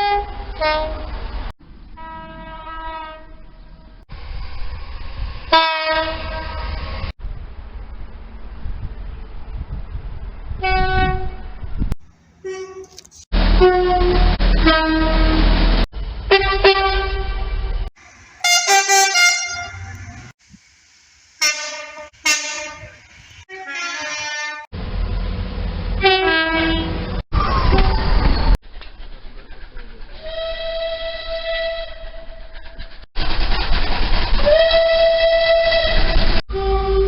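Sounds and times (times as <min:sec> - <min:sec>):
train two-tone horn: 0:00.0 - 0:01.1, 0:02.0 - 0:03.5, 0:05.5 - 0:06.9, 0:10.6 - 0:11.6, 0:12.4 - 0:15.6, 0:16.3 - 0:17.7, 0:18.4 - 0:20.3, 0:21.4 - 0:24.7, 0:26.0 - 0:27.1, 0:30.2 - 0:32.4, 0:34.4 - 0:37.0
train rumbling past: 0:00.0 - 0:37.0.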